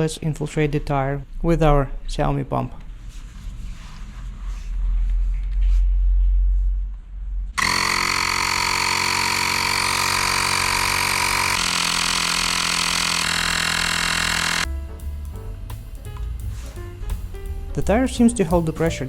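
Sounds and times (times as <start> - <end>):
tyre inflator buzzing hum: 7.6 - 14.7.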